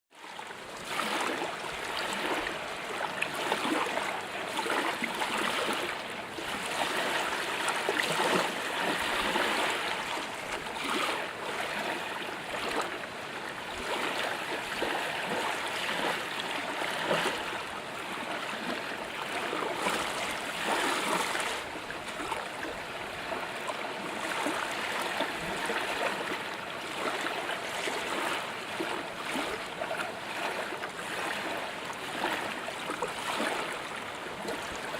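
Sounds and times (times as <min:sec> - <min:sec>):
water lapping against boat hull: 0:00.2 - 0:34.9.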